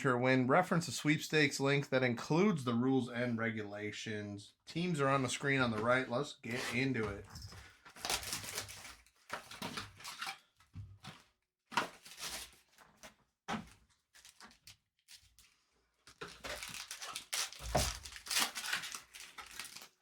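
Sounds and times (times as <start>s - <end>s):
packaging crinkling and tearing: 7.6s - 10.4s, 11.7s - 12.9s, 16.1s - 20.0s.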